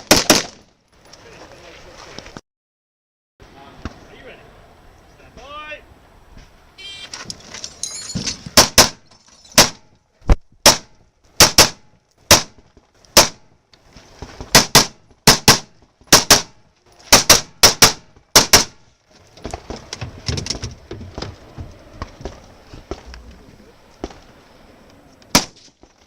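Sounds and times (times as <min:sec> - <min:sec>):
rifle shots: 0:08.6 - 0:09.0, 0:10.6 - 0:12.6, 0:13.2 - 0:13.4, 0:14.5 - 0:18.8, 0:25.3 - 0:25.6.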